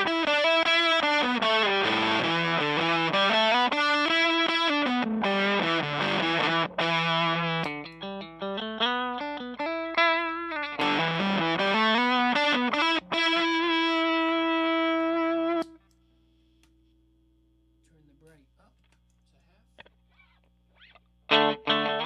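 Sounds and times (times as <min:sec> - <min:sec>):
distorted electric guitar riff: 0:00.0 - 0:15.7, 0:20.1 - 0:22.0.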